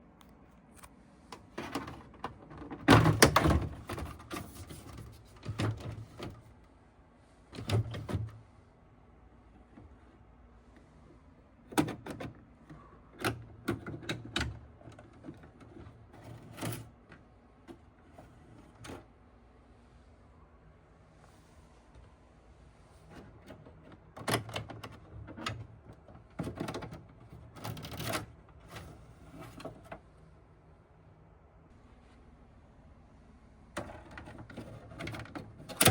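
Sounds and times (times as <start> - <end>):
plastic panel clicks and rattles: 1.6 - 4.8, 11.7 - 17.8, 23.1 - 28.5, 33.8 - 35.9.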